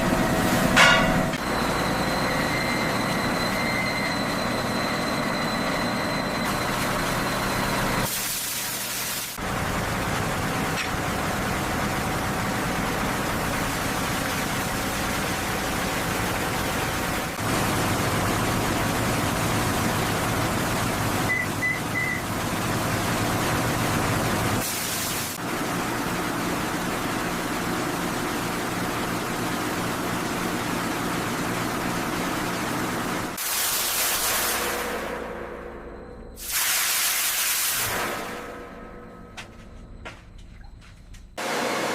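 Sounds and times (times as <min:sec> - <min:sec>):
low hum: 0:34.8 - 0:36.4.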